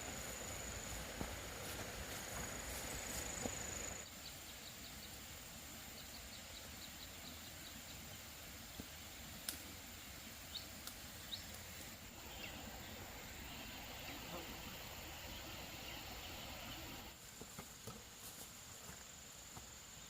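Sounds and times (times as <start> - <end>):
high insect whine: 0.0 - 4.1, 11.7 - 17.1.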